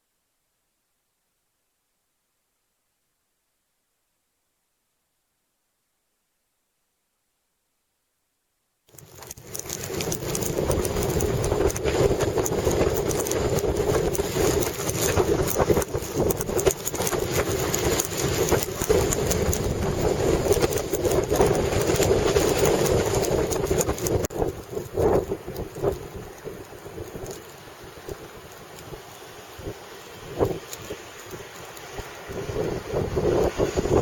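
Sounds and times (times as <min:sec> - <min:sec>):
strong wind buffeting microphone: 0:09.2 - 0:34.0.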